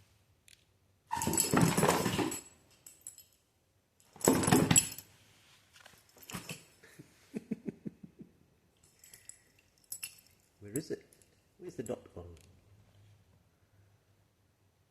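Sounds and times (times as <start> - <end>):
cat scuffling and scrabbling: 1.1 - 2.4, 5.8 - 6.7.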